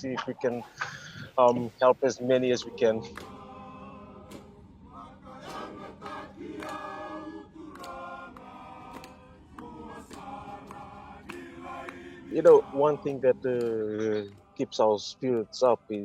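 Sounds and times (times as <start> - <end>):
men singing chorally: 2.3 - 14.8.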